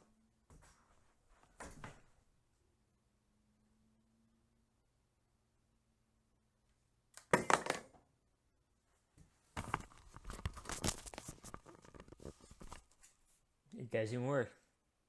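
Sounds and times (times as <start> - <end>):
crinkling and rustling handling: 9.1 - 13.4.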